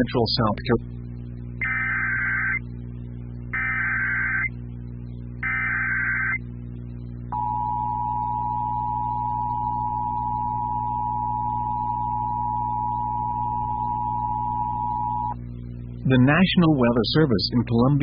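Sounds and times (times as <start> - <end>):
single-pitch warning alarm tone: 1.6 - 2.6, 3.6 - 4.5, 5.4 - 6.4, 7.3 - 15.4
buzzy digital data tones: 1.6 - 2.7, 3.5 - 4.6, 5.4 - 6.4.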